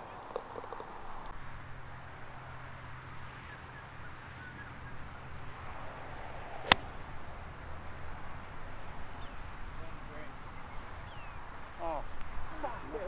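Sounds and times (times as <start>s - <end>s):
golf club striking ball: 6.6s - 7.1s.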